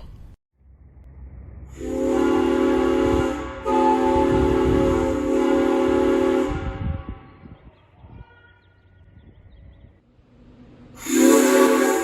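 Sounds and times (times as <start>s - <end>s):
steam whistle chord: 1.8s - 6.5s, 11.0s - 12.0s.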